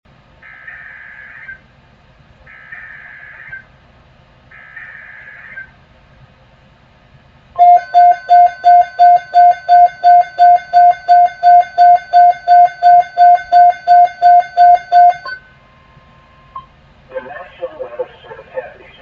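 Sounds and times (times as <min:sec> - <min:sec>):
faint hum: 0:00.1 - 0:19.0
electronic alert tone beeping: 0:07.6 - 0:15.4
warbling digital header bursts: 0:07.6 - 0:15.4.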